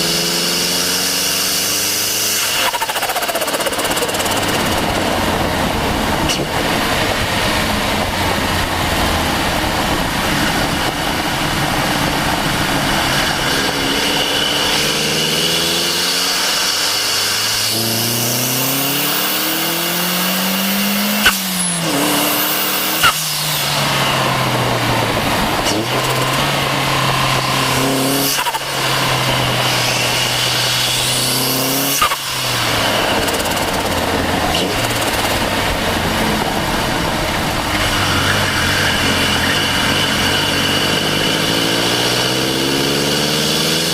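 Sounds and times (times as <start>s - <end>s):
car engine revving: 0.0s - 43.9s
sharp bursts on throttle shut: 2.0s - 7.0s, 27.4s - 36.5s
turbo spool whine: 9.6s - 41.7s.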